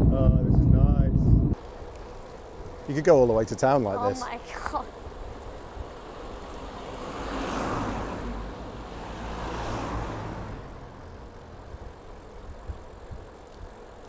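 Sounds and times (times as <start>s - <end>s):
steady low rumble: 0.0s - 6.8s
passing traffic rushing: 1.6s - 14.0s.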